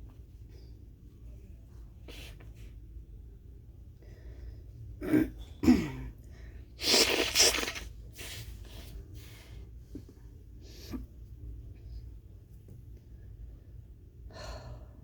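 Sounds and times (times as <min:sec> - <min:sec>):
quiet breathing: 0:03.8 - 0:05.6, 0:08.1 - 0:12.4, 0:13.0 - 0:15.0
person stifling sneezes: 0:06.8 - 0:07.9.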